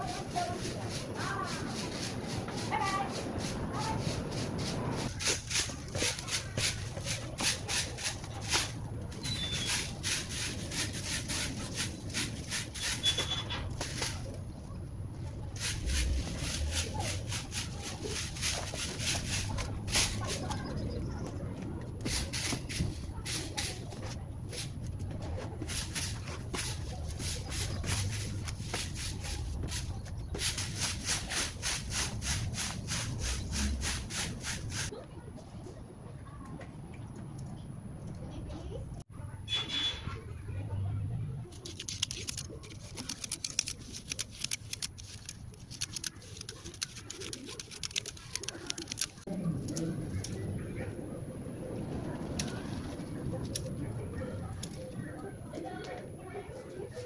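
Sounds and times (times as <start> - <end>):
broom sweeping: 0.0 - 14.4, 15.4 - 21.0, 22.0 - 35.0, 41.6 - 49.3
faint bird chirps: 9.2 - 9.8.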